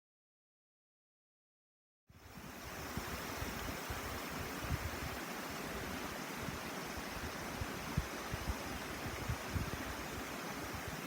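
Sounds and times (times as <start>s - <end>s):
mountain river murmur: 2.4s - 11.0s.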